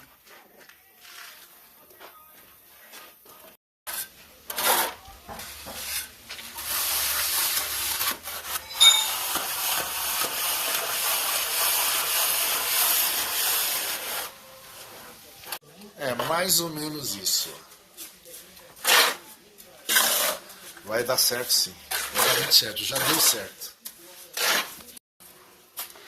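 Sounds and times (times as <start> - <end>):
tool scraping rough surface: 3.9 - 14.4, 18.7 - 20.6, 21.4 - 23.6, 24.3 - 24.9.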